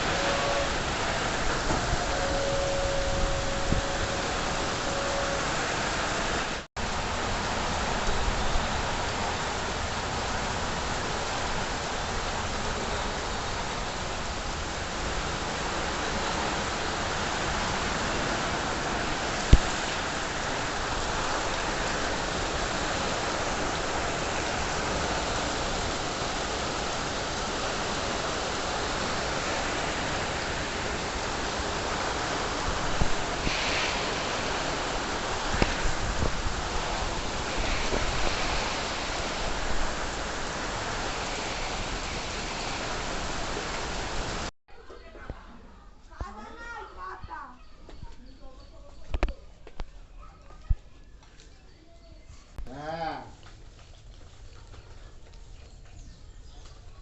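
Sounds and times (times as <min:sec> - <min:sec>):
heavy rain and hail falling: 0:00.0 - 0:44.5.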